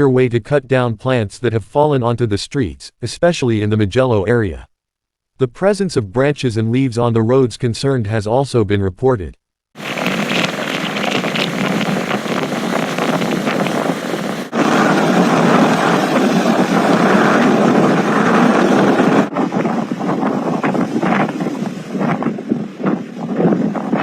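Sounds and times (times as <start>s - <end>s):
strong wind buffeting microphone: 9.8s - 24.0s.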